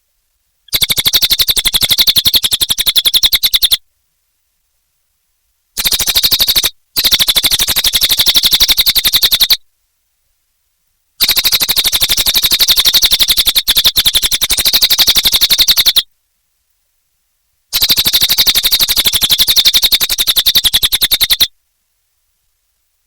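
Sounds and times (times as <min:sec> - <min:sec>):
bird singing sharp notes: 0:00.7 - 0:03.8.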